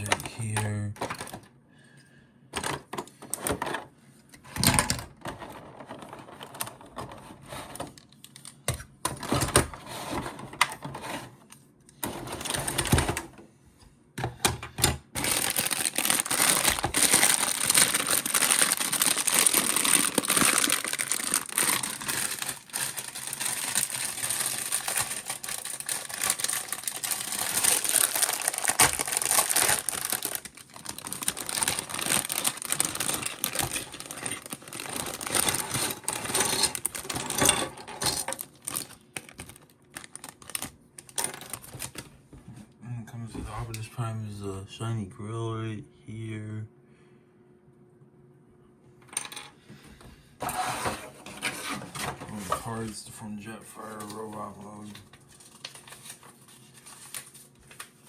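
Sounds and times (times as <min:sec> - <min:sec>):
plastic wrap crinkling: 0:15.2 - 0:37.5, 0:38.1 - 0:42.1, 0:53.8 - 0:58.0.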